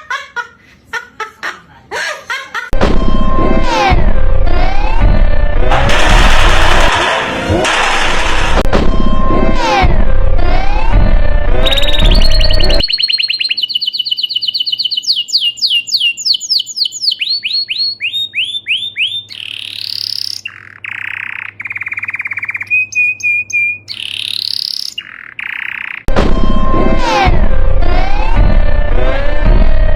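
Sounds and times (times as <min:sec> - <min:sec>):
bird chirping: 0:11.7 - 0:26.1.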